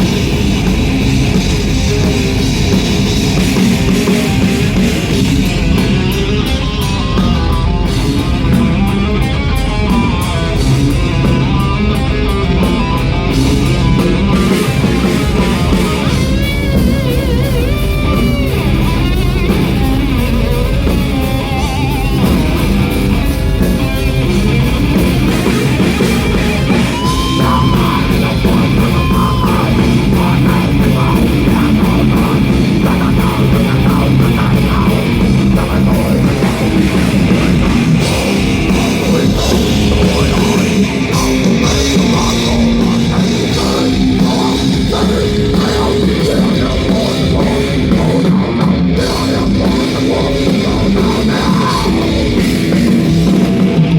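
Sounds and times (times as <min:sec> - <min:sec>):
drum kit: 0:00.0 - 0:53.9
electric guitars: 0:00.0 - 0:53.9
live rock band: 0:00.0 - 0:53.9.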